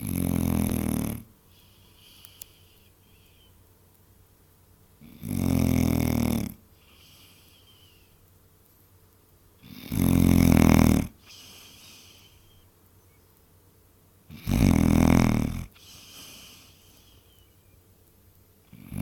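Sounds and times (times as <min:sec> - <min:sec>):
dog snoring with rattle: 0:00.0 - 0:01.3, 0:05.0 - 0:06.6, 0:09.6 - 0:12.2, 0:14.3 - 0:16.7, 0:18.6 - 0:19.0.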